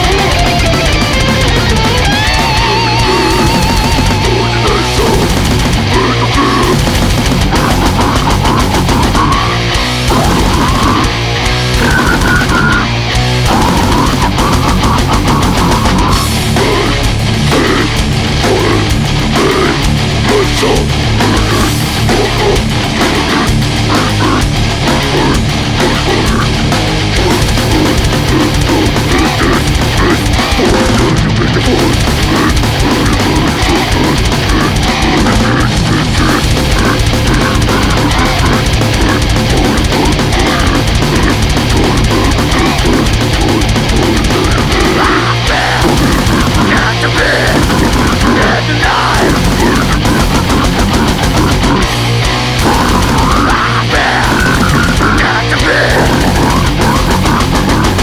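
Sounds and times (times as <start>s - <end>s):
death metal music: 0.0s - 58.0s.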